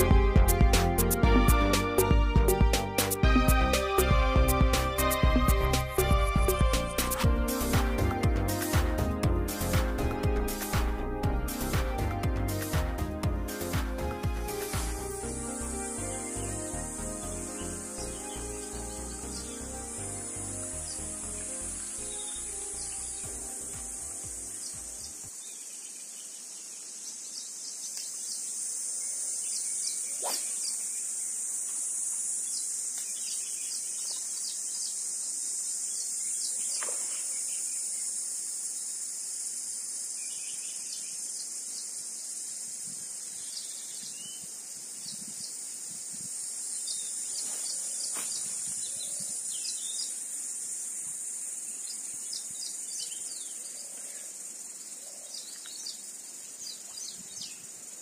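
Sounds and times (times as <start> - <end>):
insects buzzing: 0.0 - 58.0
bird chirps: 29.5 - 31.0.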